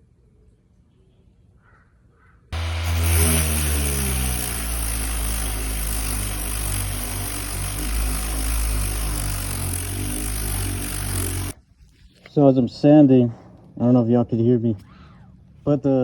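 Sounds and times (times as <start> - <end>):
orbital sander on metal: 2.6 - 11.6.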